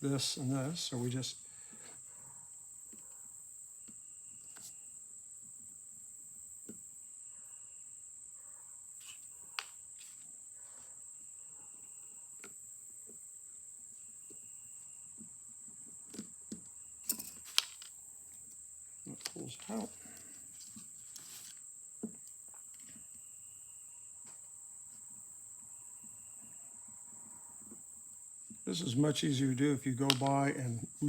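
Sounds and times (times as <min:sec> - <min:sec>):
metal parts clicking and tapping: 0:17.0 - 0:17.9, 0:30.0 - 0:30.4.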